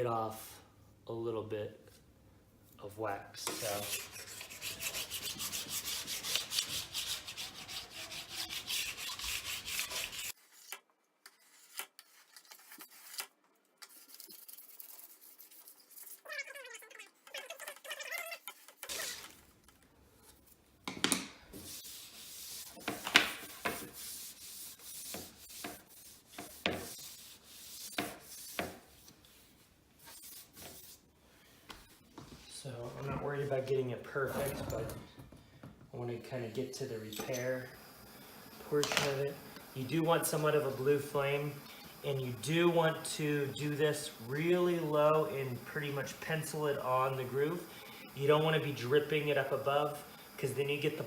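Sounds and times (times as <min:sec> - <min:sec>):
wax scraper on snowboard base: 0:03.4 - 0:13.3.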